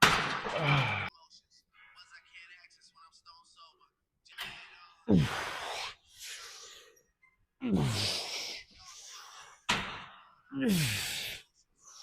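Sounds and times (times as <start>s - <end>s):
person grunting out-breaths: 0.5s - 1.1s, 5.1s - 5.9s, 7.6s - 8.5s, 10.5s - 11.4s.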